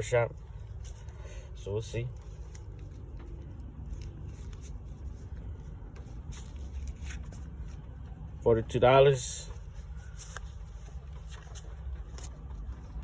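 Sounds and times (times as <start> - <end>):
vehicle cabin engine rumble: 0.0 - 13.0
faint clicks and rustles: 0.3 - 13.0.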